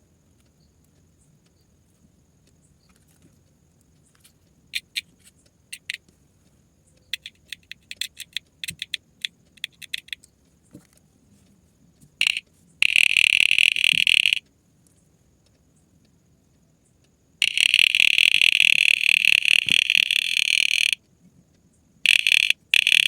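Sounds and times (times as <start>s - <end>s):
harsh high-pitched buzz: 12.2s - 14.4s, 17.4s - 21.0s, 22.1s - 23.0s.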